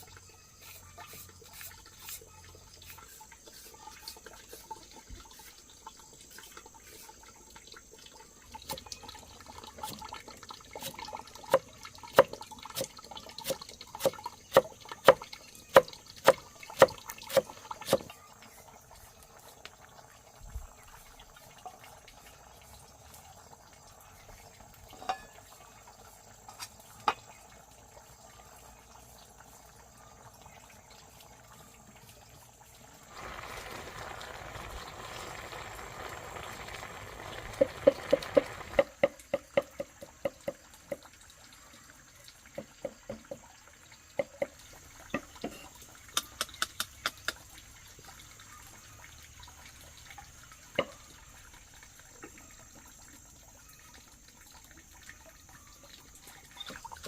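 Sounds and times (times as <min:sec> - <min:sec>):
water running: 0:00.0 - 0:57.0.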